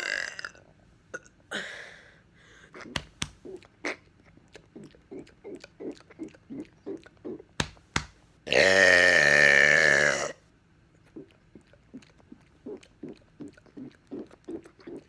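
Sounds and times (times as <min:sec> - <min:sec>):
person burping: 0:00.0 - 0:00.6, 0:08.5 - 0:10.4.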